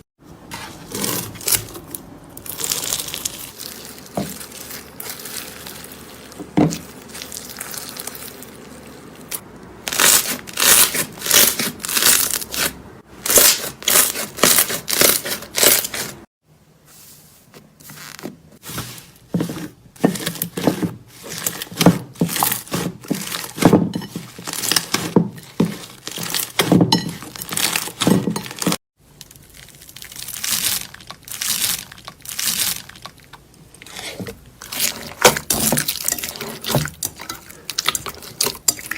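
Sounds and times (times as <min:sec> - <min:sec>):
slime crackling and popping: 0:29.0 - 0:33.5.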